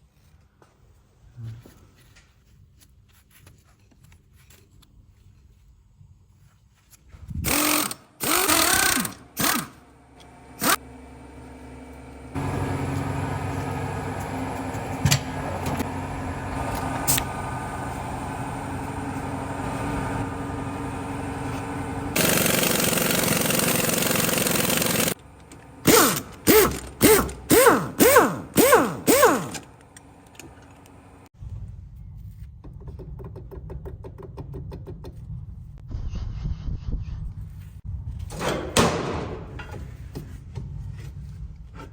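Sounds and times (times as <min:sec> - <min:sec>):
machine running steadily: 0:07.4 - 0:31.3
power tool bursts: 0:07.5 - 0:09.8, 0:10.6 - 0:10.8, 0:22.2 - 0:25.2, 0:25.8 - 0:29.7.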